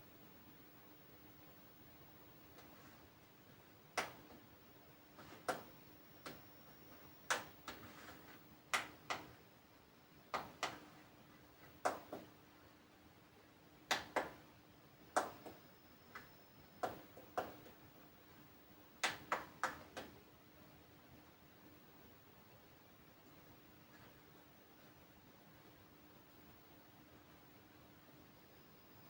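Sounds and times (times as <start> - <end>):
faint steady hum: 0.0 - 29.0
sharp clicks and taps: 7.3 - 7.8, 8.7 - 9.4, 10.3 - 10.9, 11.8 - 12.3.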